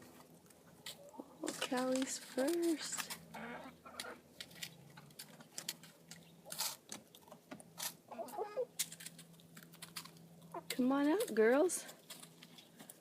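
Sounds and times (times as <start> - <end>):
chickens clucking: 3.0 - 4.3, 8.1 - 8.7.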